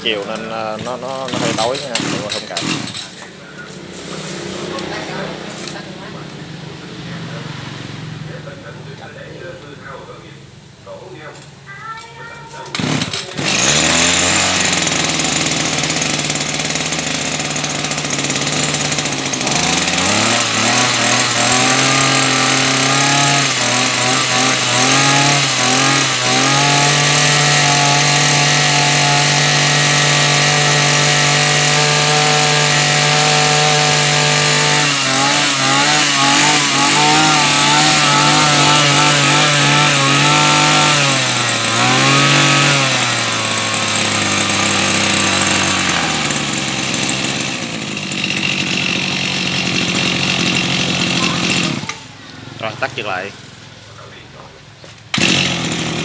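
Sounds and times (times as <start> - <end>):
brush cutter engine revving: 0.0 - 8.5, 12.6 - 53.9, 54.8 - 56.0.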